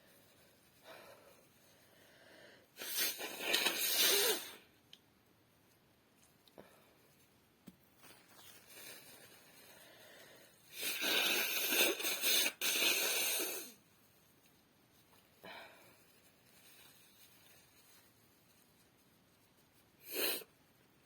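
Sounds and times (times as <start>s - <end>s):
woman's breathy nasal burst: 2.8s - 4.6s.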